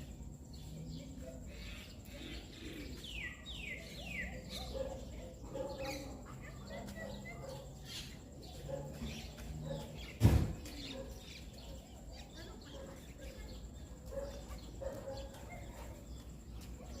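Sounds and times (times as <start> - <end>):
faint birds chirping: 0.0 - 17.0
dull thump: 10.2 - 10.7.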